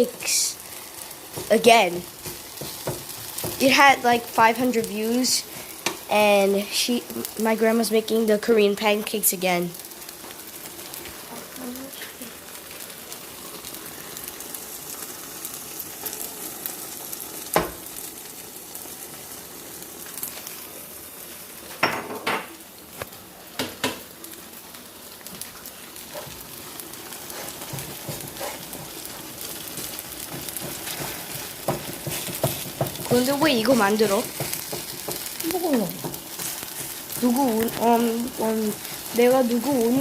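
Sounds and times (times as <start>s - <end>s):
pancakes sizzling in oil: 0.0s - 40.0s.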